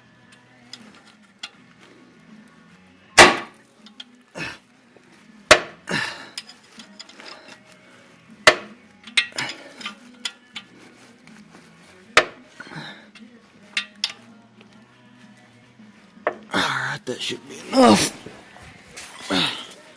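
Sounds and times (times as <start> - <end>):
hand tools clanking against metal: 6.0 - 7.6, 8.5 - 10.7, 12.2 - 14.2.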